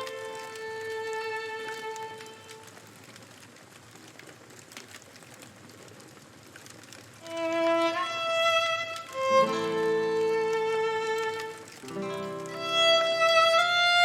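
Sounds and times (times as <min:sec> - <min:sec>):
violin slow held notes: 0:00.0 - 0:02.7, 0:07.2 - 0:14.0
campfire crackling: 0:00.0 - 0:14.0.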